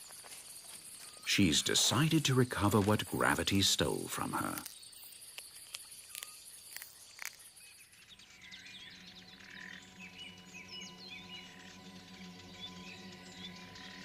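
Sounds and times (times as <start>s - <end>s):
high bird chirps: 4.7s - 14.0s.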